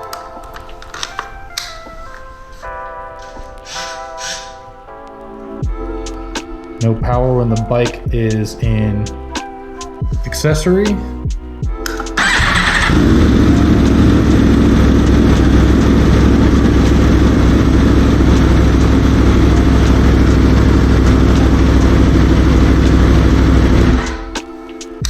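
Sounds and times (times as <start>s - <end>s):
motorcycle engine idling: 12.2s - 24.3s.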